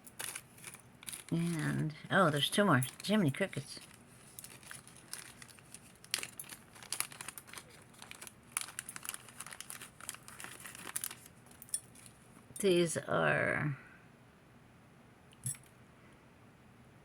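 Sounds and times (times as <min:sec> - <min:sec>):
packaging crinkling: 0:00.0 - 0:12.2.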